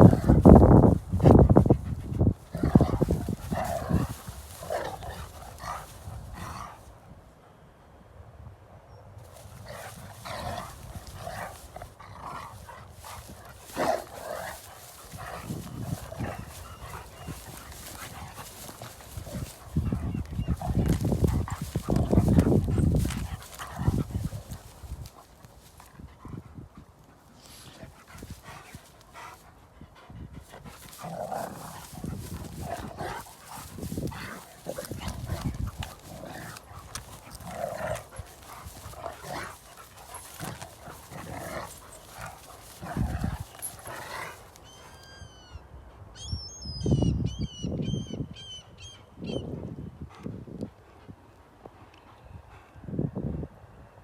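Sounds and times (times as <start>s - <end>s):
dogs barking: 9.4s - 24.7s, 30.8s - 44.4s.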